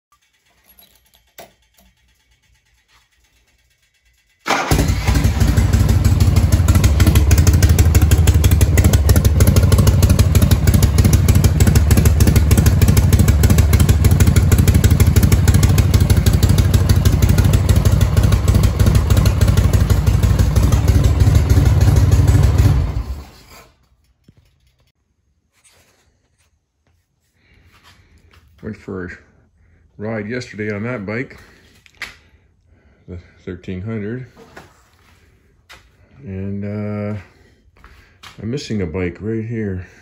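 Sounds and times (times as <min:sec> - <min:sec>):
motorcycle engine running: 0:01.6 - 0:23.4.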